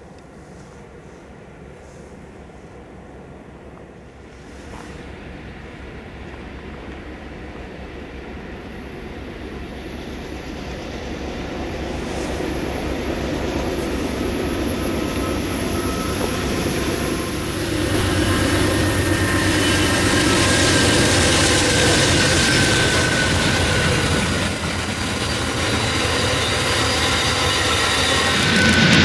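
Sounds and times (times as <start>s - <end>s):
train wheels rumbling on rail: 0.0s - 29.0s
high-pitched wheel squeal: 12.4s - 29.0s.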